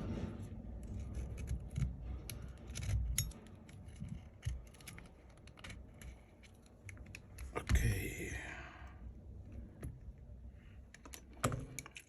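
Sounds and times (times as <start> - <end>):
light clicks and taps of tools: 10.9 - 12.0.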